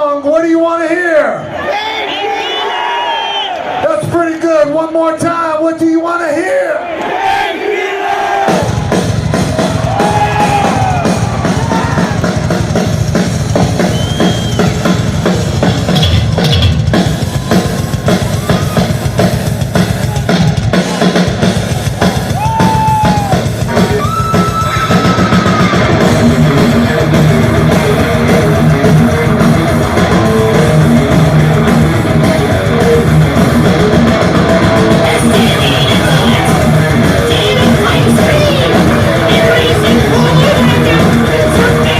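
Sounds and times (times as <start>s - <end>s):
fast drum-kit pattern: 8.4s - 41.9s
distorted guitars and bass riff: 8.6s - 41.9s
sliding guitar notes: 24.8s - 41.9s.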